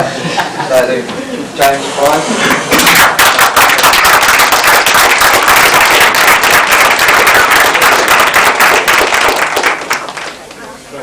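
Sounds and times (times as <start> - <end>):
audience applauding: 2.7 - 10.6.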